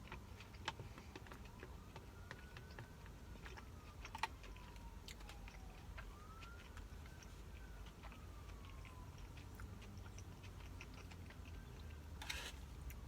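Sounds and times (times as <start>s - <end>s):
chewing crunchy food: 0.0s - 13.0s.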